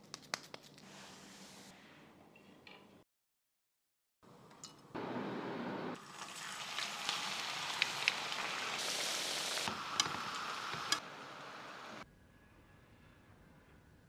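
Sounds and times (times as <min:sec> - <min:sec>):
food sizzling in hot oil: 0:06.0 - 0:12.0.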